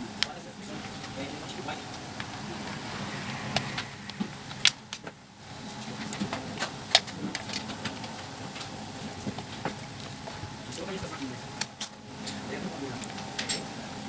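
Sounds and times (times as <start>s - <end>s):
tools and plastic parts clicking: 11.6s - 12.4s.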